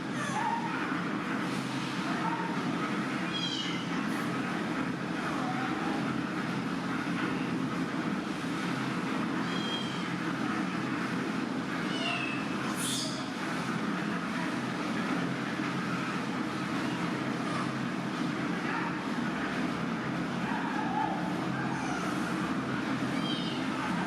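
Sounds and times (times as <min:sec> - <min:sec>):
baby monkey crying squeals: 0:03.3 - 0:03.8.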